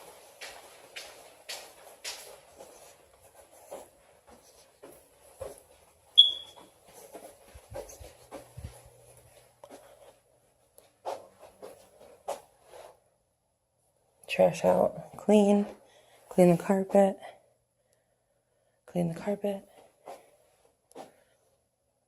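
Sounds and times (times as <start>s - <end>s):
footsteps on hard floor: 0.0s - 10.2s, 11.0s - 12.9s
short high-pitched chirp: 6.2s - 6.6s.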